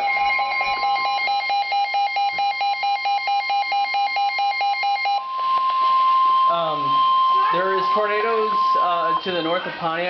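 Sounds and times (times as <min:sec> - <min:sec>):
electronic telephone ringer warbling: 0:00.0 - 0:05.2
weather alert warning tone: 0:04.8 - 0:09.5.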